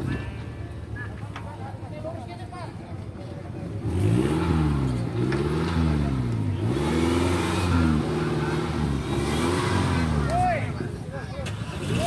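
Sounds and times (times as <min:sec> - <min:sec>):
off-road vehicle engine revving: 0:03.7 - 0:12.0.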